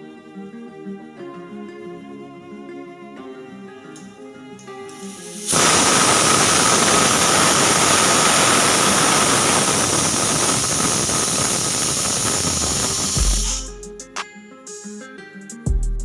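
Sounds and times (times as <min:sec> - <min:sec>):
pressure cooker whistle hissing: 0:04.9 - 0:13.8.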